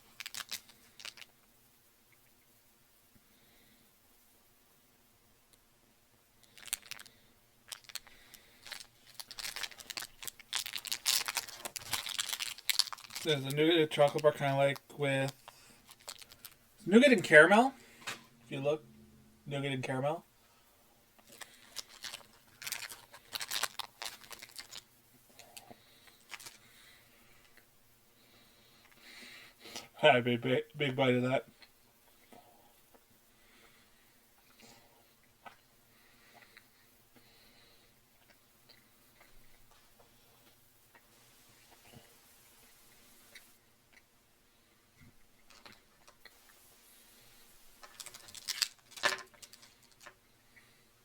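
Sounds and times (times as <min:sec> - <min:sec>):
wrapper crinkling and tearing: 0:00.1 - 0:01.3, 0:06.4 - 0:16.6, 0:21.2 - 0:26.6, 0:47.8 - 0:50.2.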